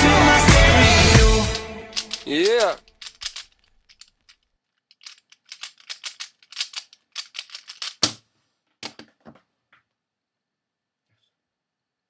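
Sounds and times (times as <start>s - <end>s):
puzzle cube layers clicking: 2.0s - 8.2s.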